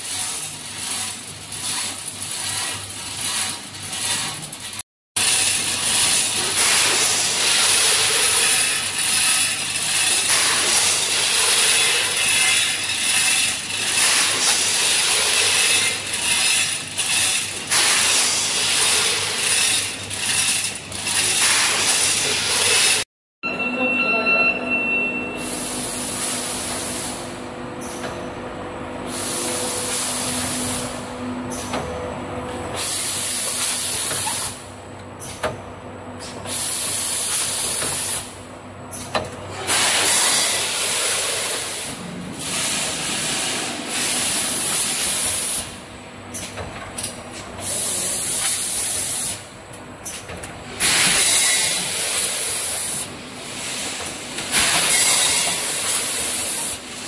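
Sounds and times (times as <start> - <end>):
packing machine running: 0.0 - 23.0, 36.5 - 57.0.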